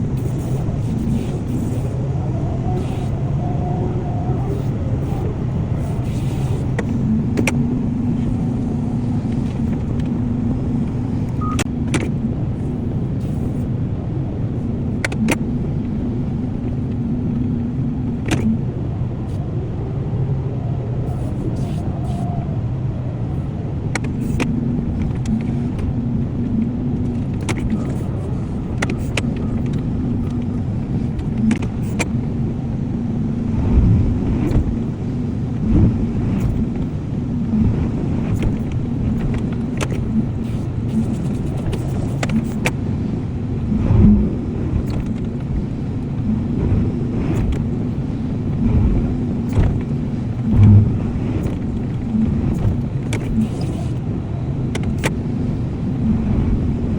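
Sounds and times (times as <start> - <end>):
excavator diesel engine running: 0.0 - 13.5
higher hum: 0.0 - 56.9.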